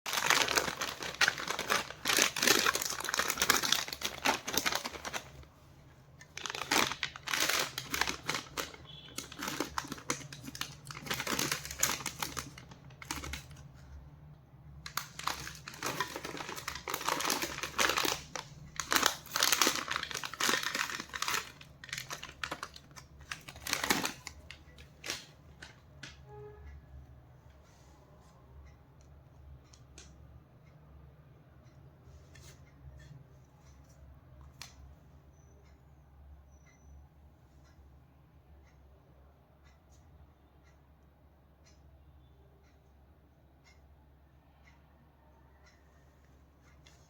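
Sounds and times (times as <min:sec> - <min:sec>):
candy wrappers crinkling: 0:00.1 - 0:05.5, 0:06.2 - 0:13.7, 0:14.8 - 0:25.7.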